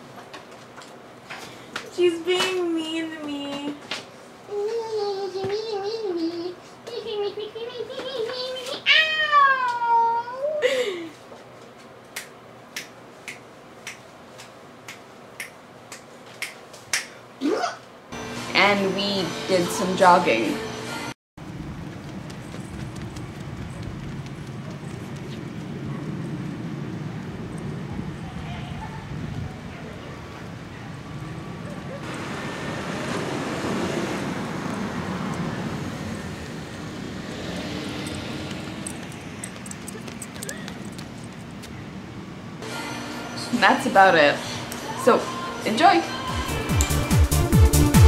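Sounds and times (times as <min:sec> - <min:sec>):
road vehicle passing by: 0:21.4 - 0:42.7.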